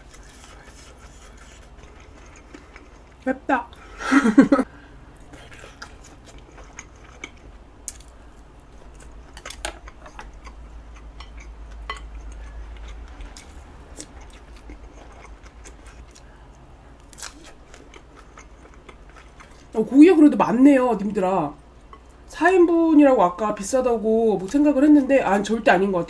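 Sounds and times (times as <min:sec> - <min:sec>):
person chewing food: 0:00.0 - 0:19.8.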